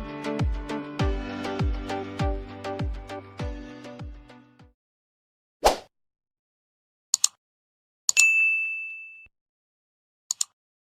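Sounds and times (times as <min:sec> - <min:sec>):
quick clicks: 0:07.2 - 0:07.4, 0:10.3 - 0:10.6
high ringing ding: 0:08.2 - 0:09.3.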